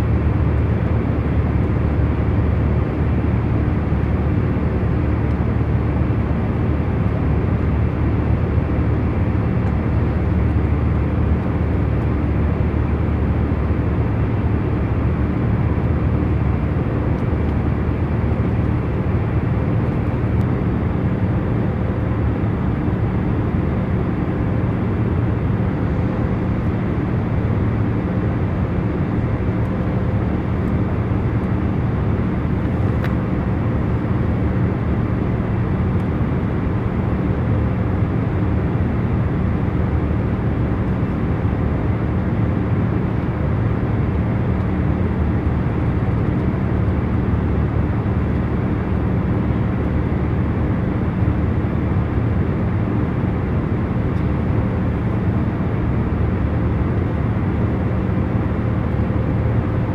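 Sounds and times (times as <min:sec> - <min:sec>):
airliner cabin engine rush: 0:00.0 - 0:59.9
faint constant hums: 0:00.0 - 0:59.9.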